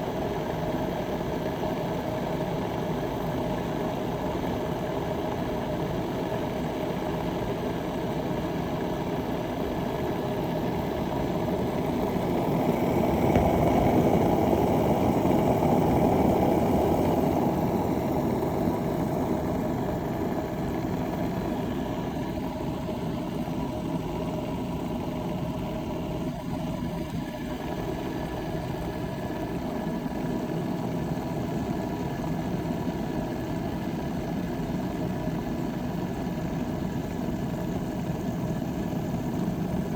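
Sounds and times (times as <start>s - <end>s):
electric kettle boiling water: 0.0s - 39.9s.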